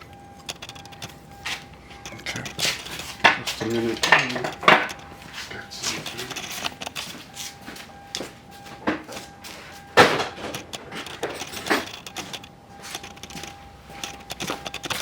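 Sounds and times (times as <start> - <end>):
hard objects knocking and clattering: 1.9 - 7.1, 10.0 - 15.0.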